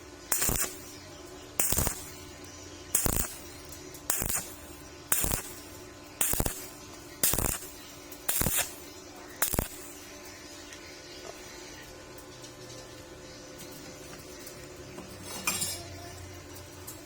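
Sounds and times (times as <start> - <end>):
welding arc crackling bursts: 0.0 - 10.4.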